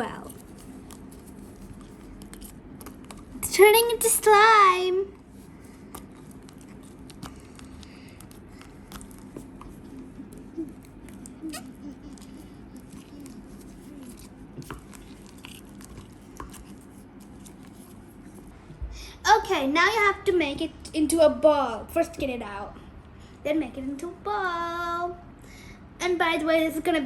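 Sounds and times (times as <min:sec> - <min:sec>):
slime stirred in a bowl: 0:00.0 - 0:18.6
steady low hum: 0:00.0 - 0:27.0.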